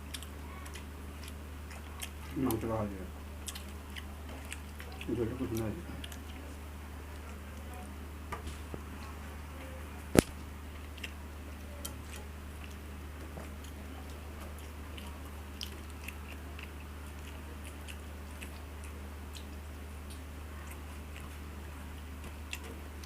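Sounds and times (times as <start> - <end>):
person chewing food: 0.0 - 9.2, 10.1 - 23.0
steady low hum: 0.0 - 23.0
wet mouth clicks: 3.4 - 6.4, 14.4 - 21.4.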